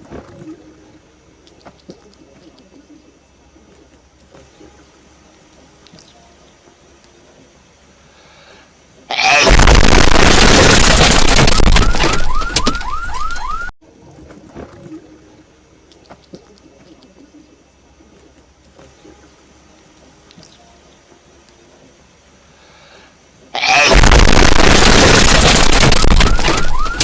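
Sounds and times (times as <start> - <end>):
loud distorted sneeze blast: 9.1 - 10.8, 23.6 - 25.2.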